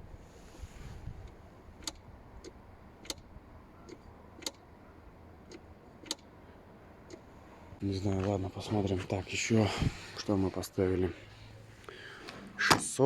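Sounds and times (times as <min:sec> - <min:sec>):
low background rumble: 0:00.0 - 0:12.6
sharp ticking clicks: 0:01.2 - 0:06.4, 0:07.0 - 0:07.3.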